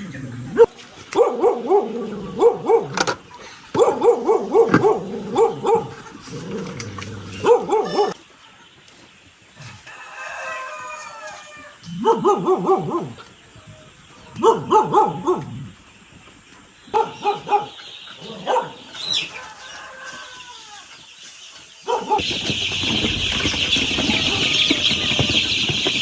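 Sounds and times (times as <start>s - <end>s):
animal yelping calls: 7.4s - 8.2s.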